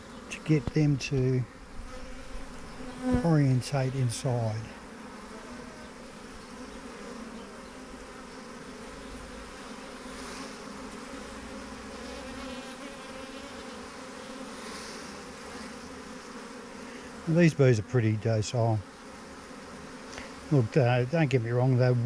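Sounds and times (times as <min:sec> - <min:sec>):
bees buzzing: 0:00.0 - 0:22.0.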